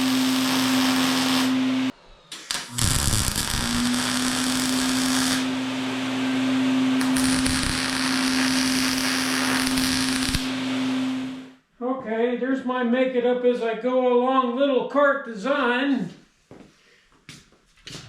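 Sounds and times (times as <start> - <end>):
power tool motor running: 0.0 - 1.9, 2.5 - 11.4.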